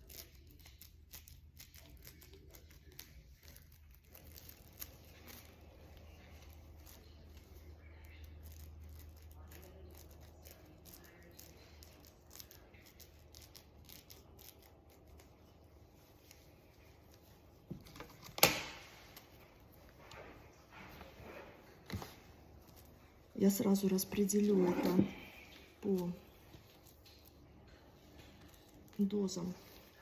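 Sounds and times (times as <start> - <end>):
cling film crinkling: 1.4 - 16.8.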